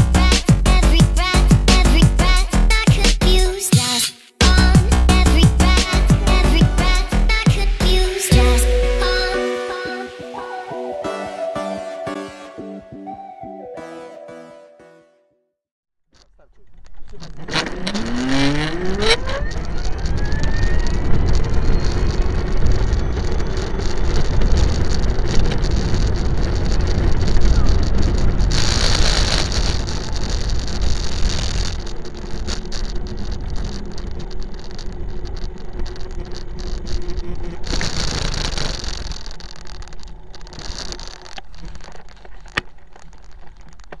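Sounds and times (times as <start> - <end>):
vehicle engine low rumble: 4.4 - 8.1.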